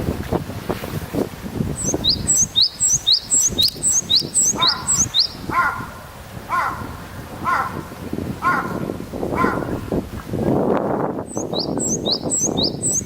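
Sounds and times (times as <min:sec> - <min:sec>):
harsh bird call: 0:01.8 - 0:05.9.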